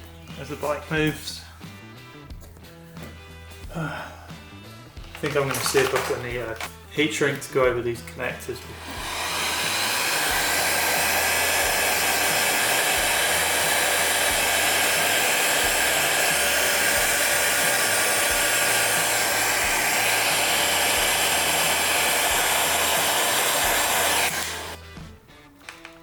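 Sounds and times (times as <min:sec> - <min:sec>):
heat gun fan whirring: 0:05.1 - 0:06.7, 0:08.6 - 0:24.8.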